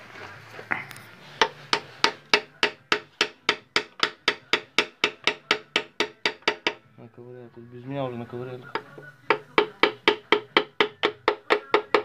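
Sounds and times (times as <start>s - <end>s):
hammer tapping on metal: 1.4s - 6.8s, 8.8s - 12.0s.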